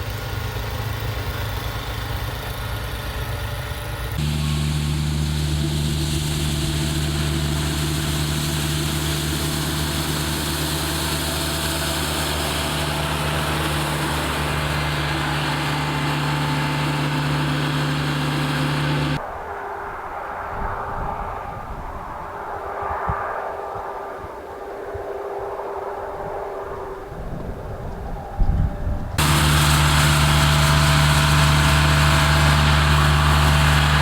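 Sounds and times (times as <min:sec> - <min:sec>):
vehicle engine humming: 0:00.2 - 0:19.2, 0:29.2 - 0:34.0.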